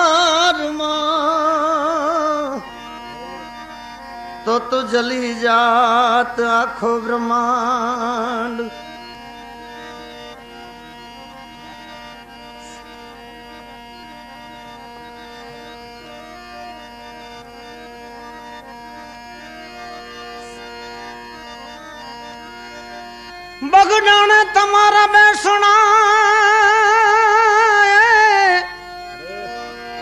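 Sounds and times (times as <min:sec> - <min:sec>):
harmonium playing: 0:00.0 - 0:30.0
person singing: 0:04.5 - 0:08.8, 0:23.6 - 0:30.0.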